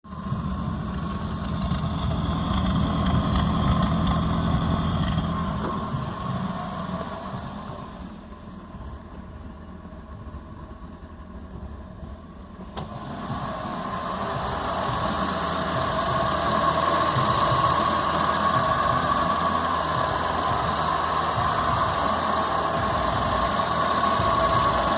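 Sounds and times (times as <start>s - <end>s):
car engine idling: 0.0s - 24.9s.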